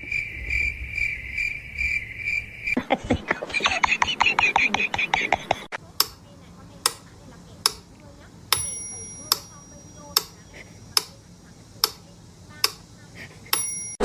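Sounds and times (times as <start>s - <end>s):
sharp ticks: 4.3s - 14.0s
short bell-like ring: 13.6s - 14.0s.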